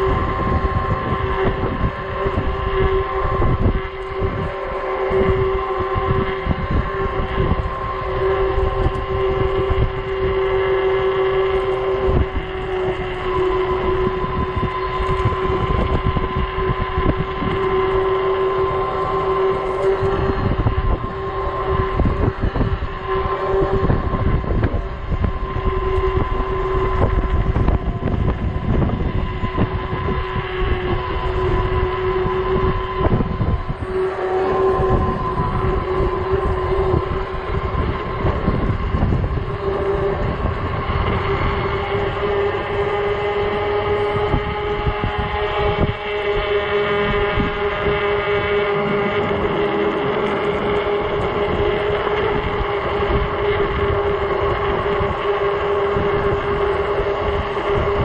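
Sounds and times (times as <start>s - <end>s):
electric motor whine: 0.0s - 58.0s
wind buffeting microphone: 0.0s - 58.0s.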